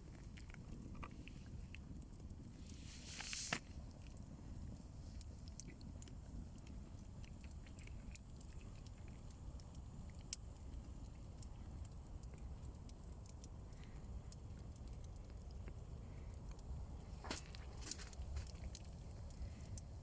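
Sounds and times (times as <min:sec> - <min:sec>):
campfire crackling and snapping: 0:00.0 - 0:20.0
rustling hiss: 0:01.1 - 0:05.5.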